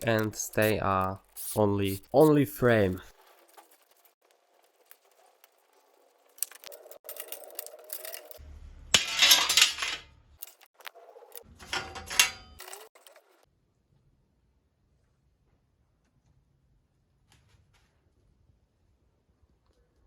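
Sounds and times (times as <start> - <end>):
metal bicycle parts clinking: 6.6 - 10.7, 11.4 - 13.1
metal rattling: 9.0 - 10.0, 11.5 - 12.9.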